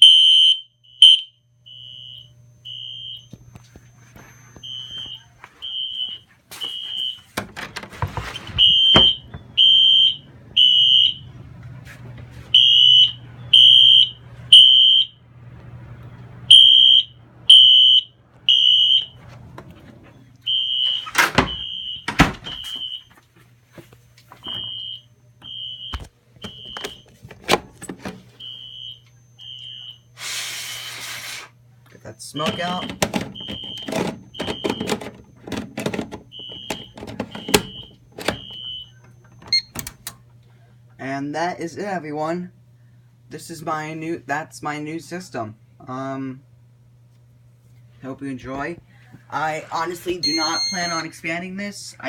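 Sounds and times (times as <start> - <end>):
fire alarm high beeping: 0.0 - 7.4, 8.6 - 11.4, 12.5 - 15.2, 16.5 - 19.2, 20.4 - 23.2, 24.4 - 27.1, 28.4 - 30.3, 32.0 - 39.9, 50.0 - 51.2.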